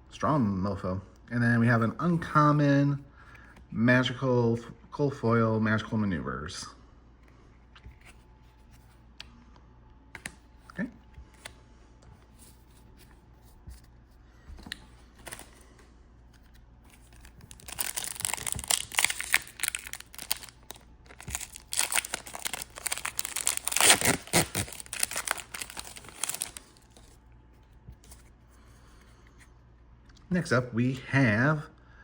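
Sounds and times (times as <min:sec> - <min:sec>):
foil wrapper tearing and crinkling: 0:17.1 - 0:26.9.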